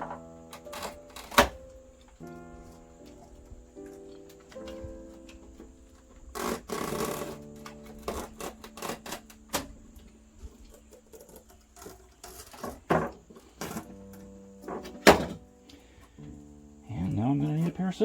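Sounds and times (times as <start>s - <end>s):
box cutter cutting screen mesh: 0.0s - 2.2s, 6.0s - 9.8s, 10.6s - 14.1s
faint background music: 0.0s - 18.0s.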